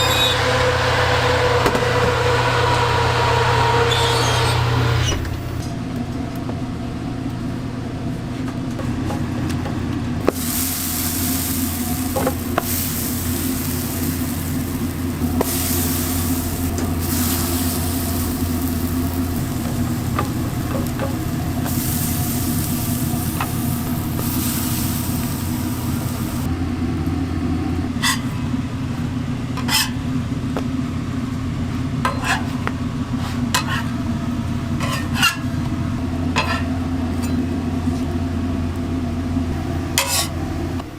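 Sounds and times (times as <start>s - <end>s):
low hum: 9.9s - 29.5s
food sizzling: 10.3s - 26.5s.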